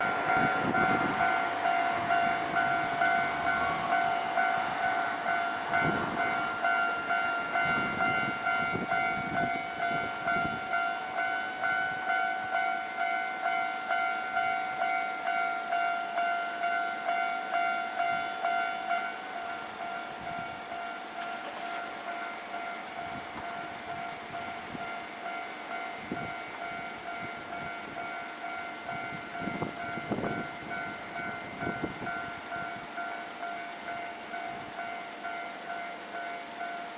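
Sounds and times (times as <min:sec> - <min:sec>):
level-crossing warning bell: 0:00.0 - 0:36.9.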